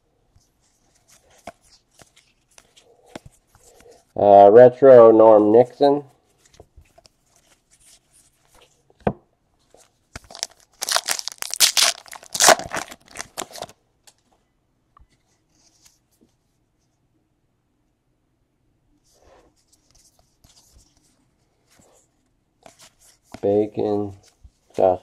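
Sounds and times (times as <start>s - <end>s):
wrapper tearing and crinkling: 10.2s - 13.7s.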